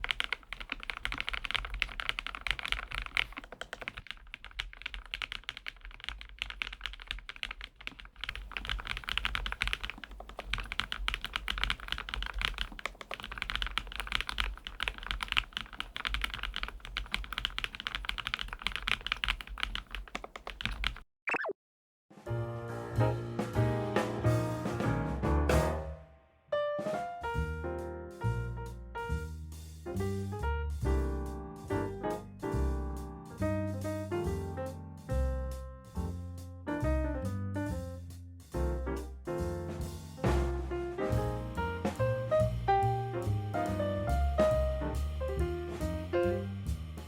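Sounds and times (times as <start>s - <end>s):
fast typing on mechanical keyboard: 0.0s - 21.0s.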